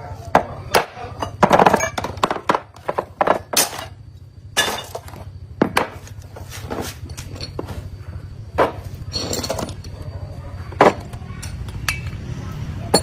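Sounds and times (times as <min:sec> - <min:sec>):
steady low hum: 0:00.0 - 0:13.0
metal tools knocking and clinking: 0:00.7 - 0:04.0, 0:04.6 - 0:05.9, 0:07.1 - 0:07.8, 0:08.6 - 0:10.0, 0:10.7 - 0:12.2.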